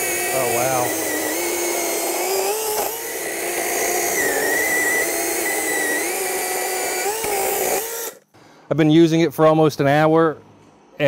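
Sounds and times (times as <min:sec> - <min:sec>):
electric chainsaw cutting wood: 0:00.0 - 0:08.3.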